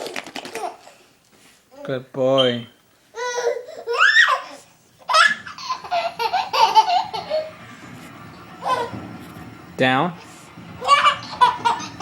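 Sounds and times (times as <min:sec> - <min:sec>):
baby laughing: 0:03.2 - 0:07.6, 0:08.6 - 0:09.0, 0:10.8 - 0:12.0.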